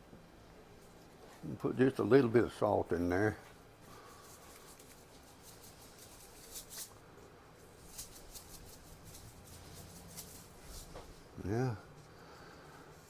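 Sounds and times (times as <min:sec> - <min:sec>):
salt shaker rattling: 0:04.0 - 0:07.0, 0:07.6 - 0:10.9.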